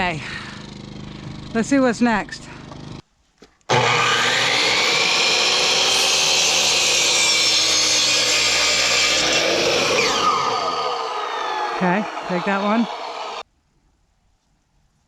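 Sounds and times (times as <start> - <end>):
saw motor winding down: 0.0 - 3.0, 3.7 - 13.4
power saw cutting wood: 3.7 - 13.4.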